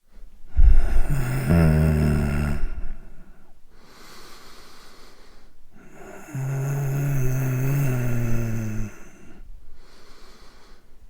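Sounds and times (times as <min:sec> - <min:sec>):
man breathing hoarsely: 0:00.5 - 0:11.0
low voiced moan: 0:00.6 - 0:03.2.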